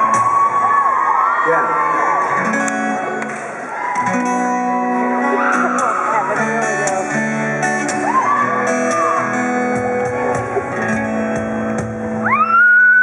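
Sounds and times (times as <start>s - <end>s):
guitar strumming: 2.2s - 12.6s.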